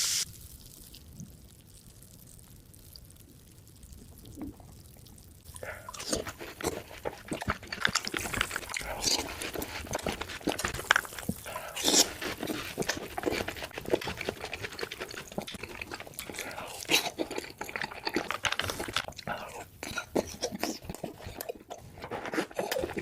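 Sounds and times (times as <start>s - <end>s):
wet mouth clicks: 4.2s - 23.0s
crunching frozen fruit: 5.6s - 23.0s.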